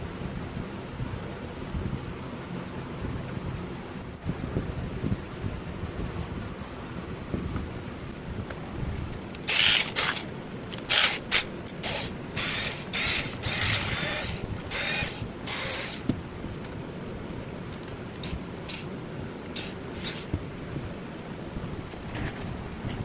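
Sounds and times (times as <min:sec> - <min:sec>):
cordless drill short bursts: 0:09.4 - 0:16.1, 0:18.2 - 0:18.9, 0:19.6 - 0:20.4.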